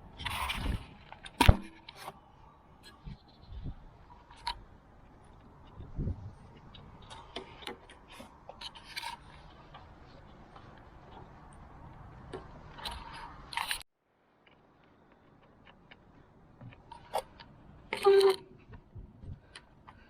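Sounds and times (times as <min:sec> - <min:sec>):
low steady background noise: 0:00.0 - 0:20.0
tools clicking and scraping: 0:12.4 - 0:13.8.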